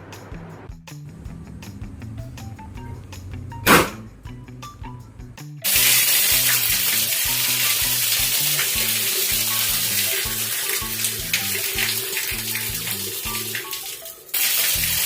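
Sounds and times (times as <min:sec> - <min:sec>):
background music with bass: 0:00.0 - 0:13.8, 0:14.8 - 0:15.0
loud sizzling hiss: 0:05.6 - 0:15.0.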